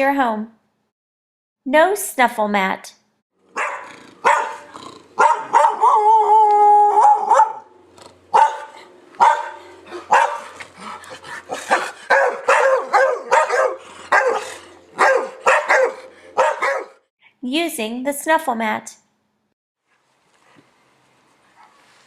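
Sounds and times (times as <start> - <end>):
dog barking: 3.5 - 6.1, 6.9 - 7.7, 8.3 - 10.6, 11.5 - 17.0
dog howling: 3.6 - 7.7, 8.4 - 17.0.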